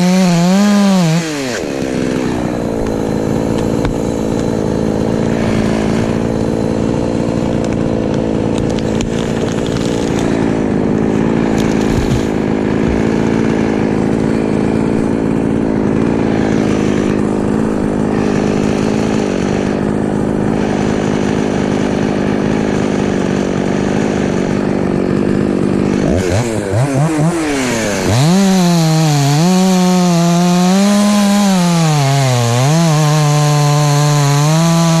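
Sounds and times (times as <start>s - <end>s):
chainsaw running: 0.0s - 35.0s.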